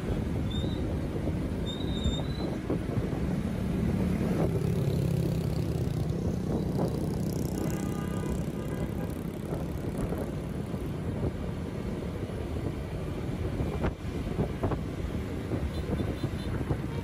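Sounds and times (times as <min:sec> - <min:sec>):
vehicle and road noise: 0:00.0 - 0:17.0
wind rumbling on microphone: 0:00.0 - 0:17.0.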